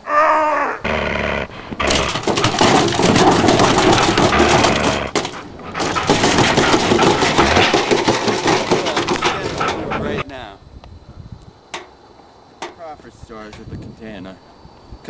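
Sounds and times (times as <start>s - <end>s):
animal-like growling: 0.0s - 10.3s
garbage can clattering: 1.4s - 10.2s.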